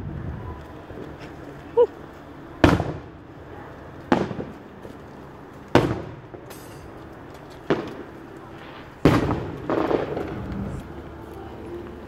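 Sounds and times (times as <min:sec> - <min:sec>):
fireworks bangs echoing: 0:02.6 - 0:03.1, 0:04.1 - 0:04.7, 0:05.7 - 0:07.0, 0:07.6 - 0:10.9.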